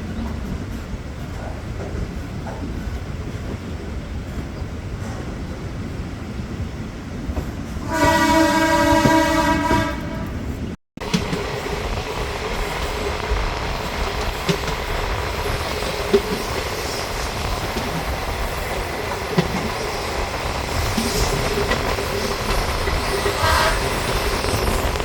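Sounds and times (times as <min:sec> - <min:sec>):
train running noise: 0:00.0 - 0:25.0
train horn: 0:07.8 - 0:10.4, 0:23.3 - 0:24.2.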